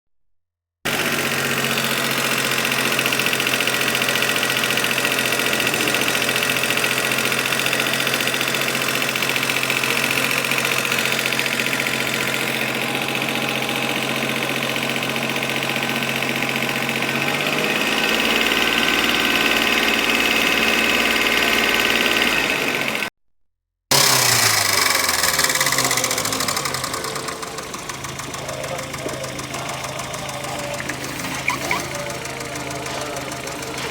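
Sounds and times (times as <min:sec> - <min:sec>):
car engine idling: 0:00.9 - 0:23.1, 0:24.0 - 0:33.9
hydraulic lifters tapping: 0:25.0 - 0:33.9.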